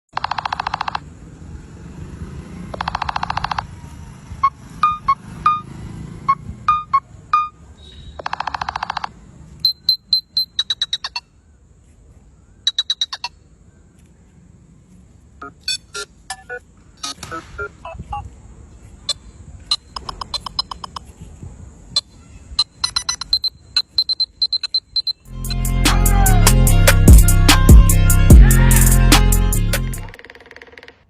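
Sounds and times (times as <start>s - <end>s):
high ticking clicks: 0.1s - 1.1s, 2.7s - 3.8s, 8.2s - 11.3s, 19.1s - 21.1s, 22.0s - 25.3s
phone ringtone buzzy pulsed tones: 2.7s - 3.7s, 4.4s - 7.6s.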